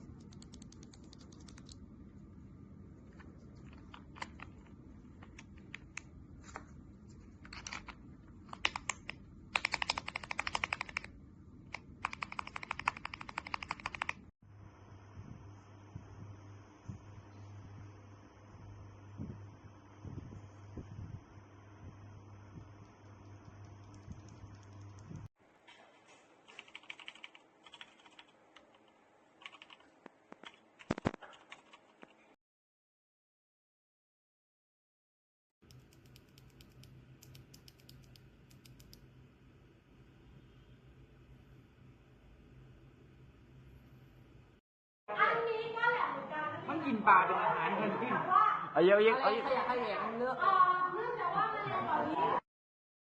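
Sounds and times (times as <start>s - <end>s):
mechanical keyboard typing: 0.2s - 1.8s, 3.7s - 4.6s, 7.5s - 11.1s, 11.7s - 14.2s, 23.4s - 25.2s, 26.5s - 31.8s, 35.7s - 39.0s.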